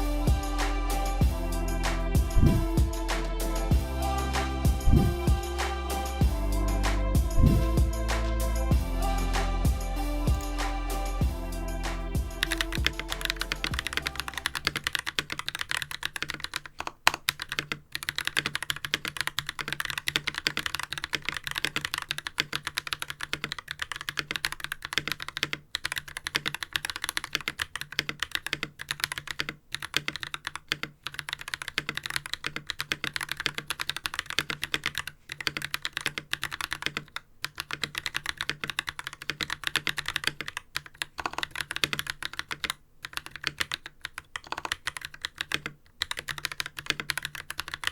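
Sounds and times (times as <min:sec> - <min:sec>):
fast mechanical keyboard typing: 0:02.4 - 0:02.6, 0:04.9 - 0:05.1, 0:10.3 - 0:47.9.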